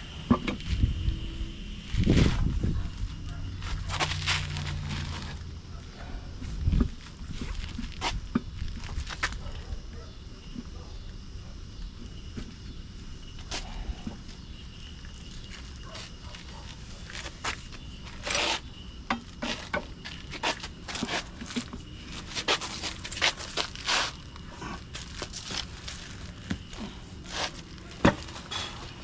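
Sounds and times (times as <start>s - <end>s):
metal tools scraping on tire: 27.3s - 29.0s.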